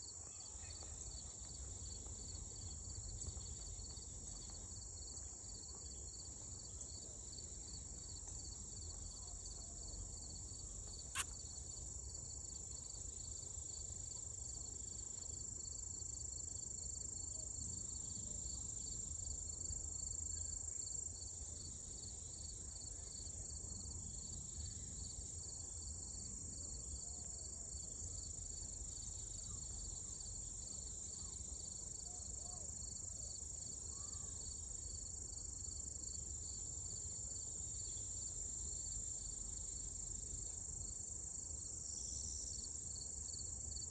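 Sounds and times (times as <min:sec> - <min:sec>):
low pulsing insect trill: 0:02.2 - 0:43.9
high-pitched insect buzz: 0:11.1 - 0:11.4
sharp click: 0:11.2 - 0:11.4.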